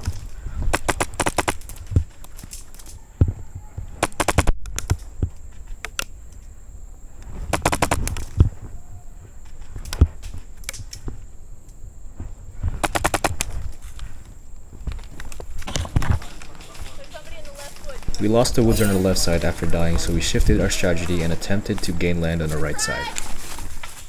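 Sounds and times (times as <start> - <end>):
airsoft rifle bursts: 0.0 - 3.0, 3.7 - 5.1, 7.5 - 8.4, 12.8 - 14.0.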